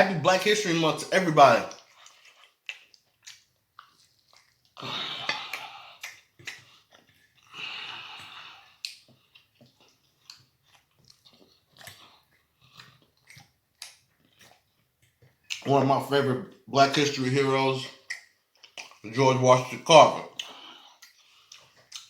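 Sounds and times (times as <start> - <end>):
person chewing and smacking food: 1.5 - 15.9, 17.9 - 22.0.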